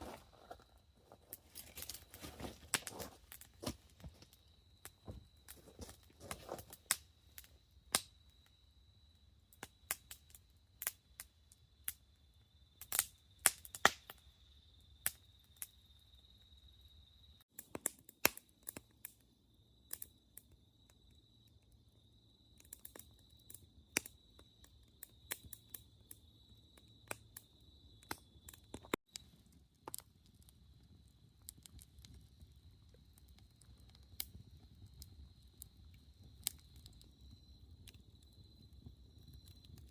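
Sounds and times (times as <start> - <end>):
campfire crackling: 0.0 - 39.9.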